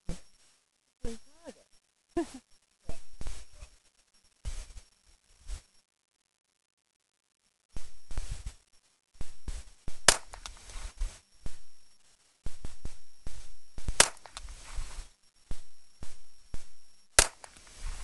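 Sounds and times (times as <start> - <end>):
rifle shots cracking: 10.1 - 10.5, 13.9 - 14.4, 17.2 - 17.6.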